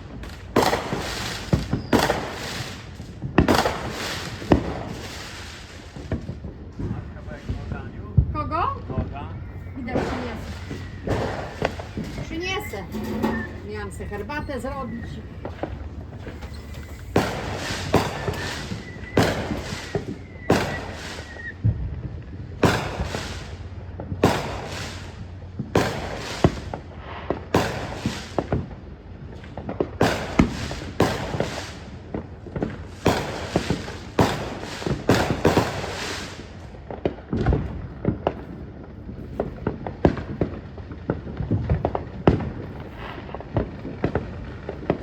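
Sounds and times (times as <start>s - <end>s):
fireworks banging and crackling: 0.0s - 45.0s
faint firework whistle: 0.6s - 6.1s, 6.9s - 23.6s, 33.0s - 36.6s.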